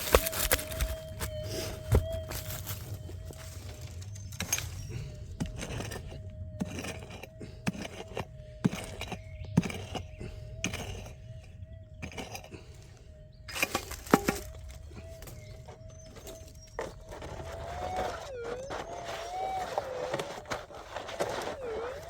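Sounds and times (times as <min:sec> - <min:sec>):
digging tool striking hard ground: 0:00.0 - 0:02.4
metal detector hum: 0:00.0 - 0:07.2, 0:13.4 - 0:22.0.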